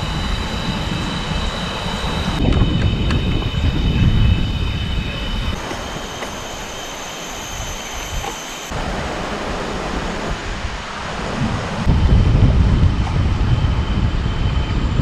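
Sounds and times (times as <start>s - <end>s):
insect chorus: 0.0s - 10.0s
cicada piercing whine: 0.0s - 15.0s
wind rumbling on microphone: 0.0s - 15.0s.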